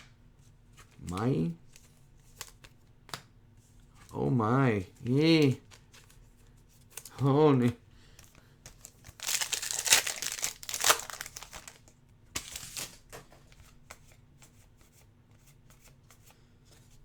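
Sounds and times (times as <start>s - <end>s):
plastic wrapper crinkling and tearing: 8.7s - 13.0s
cards clicking: 9.1s - 11.8s.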